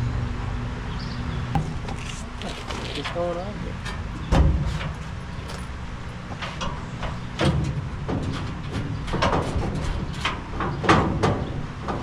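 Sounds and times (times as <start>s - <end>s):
heavy knocks on car body: 1.6s - 2.4s.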